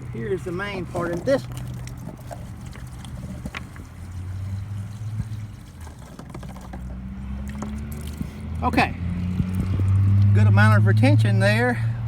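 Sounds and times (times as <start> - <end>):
water pouring from jug: 0.8 - 8.3.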